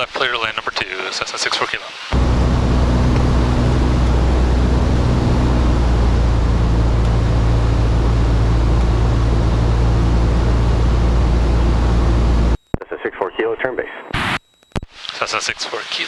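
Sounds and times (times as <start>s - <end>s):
airplane engine drone in cabin: 2.1s - 12.6s.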